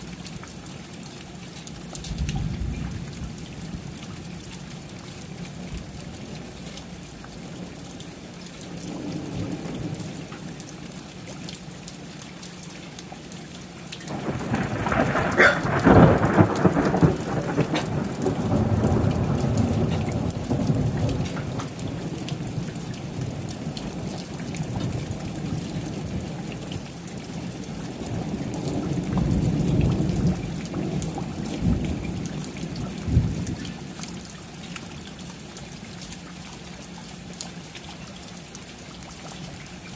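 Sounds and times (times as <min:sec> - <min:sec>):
steady rain falling: 0:00.0 - 0:39.9
thunder crack and rumble: 0:02.1 - 0:04.0, 0:14.1 - 0:33.8.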